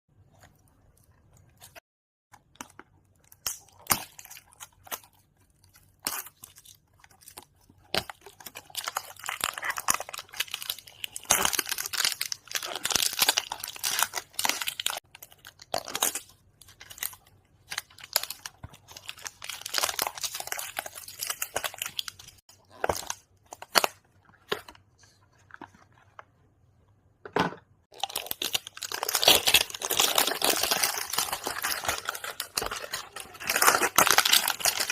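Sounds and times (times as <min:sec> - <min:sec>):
packaging rustling and crinkling: 0:28.0 - 0:34.9.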